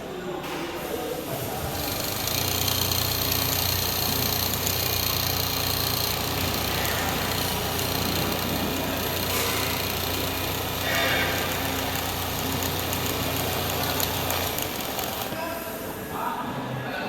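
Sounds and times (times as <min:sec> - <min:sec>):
sewing machine motor hum: 0:01.6 - 0:15.4.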